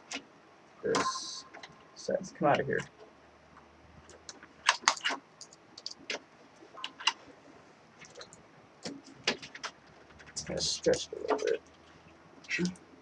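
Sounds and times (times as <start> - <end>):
computer parts clicking and clattering: 4.0 - 7.3, 8.0 - 12.8.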